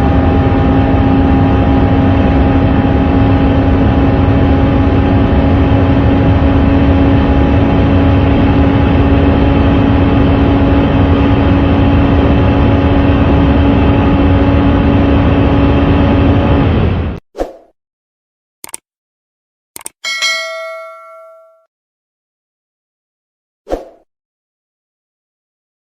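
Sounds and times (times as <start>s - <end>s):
car engine running hard: 0.0s - 17.2s
wind and road noise: 0.0s - 17.2s.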